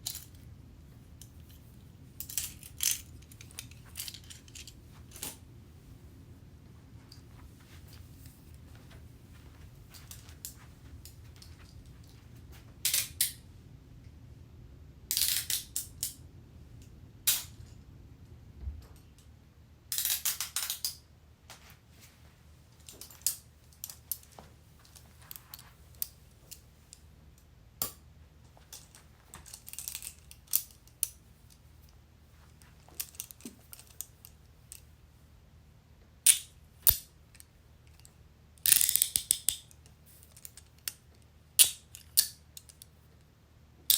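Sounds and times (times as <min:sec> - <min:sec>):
handcuffs clicking and rattling: 0:02.2 - 0:05.4, 0:15.1 - 0:16.2, 0:28.7 - 0:31.6, 0:32.6 - 0:34.8, 0:36.3 - 0:41.0, 0:41.6 - 0:42.9.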